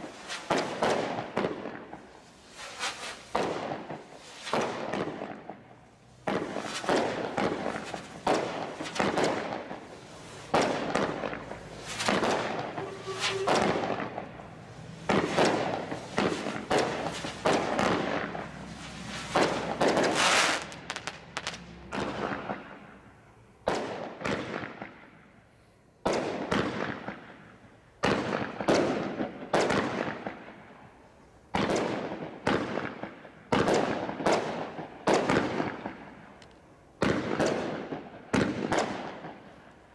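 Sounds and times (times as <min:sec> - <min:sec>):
firework hissing: 0:00.0 - 0:23.0
firework bangs: 0:00.0 - 0:25.3, 0:26.0 - 0:36.4, 0:37.0 - 0:39.9
firework crackle: 0:00.0 - 0:39.9.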